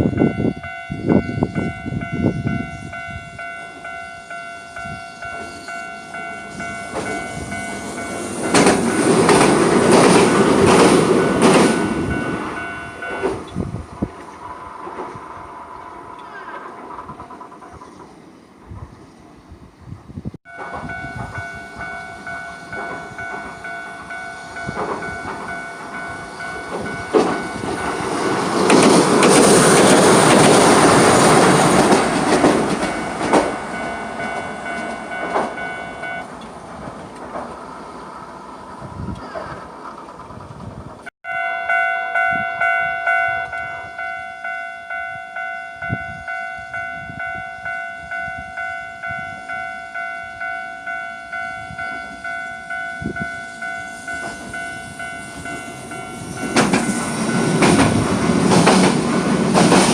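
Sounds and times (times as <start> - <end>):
level crossing warning signal: 0.0 - 13.7, 20.5 - 36.6, 41.3 - 58.8
train rumble: 0.0 - 59.9.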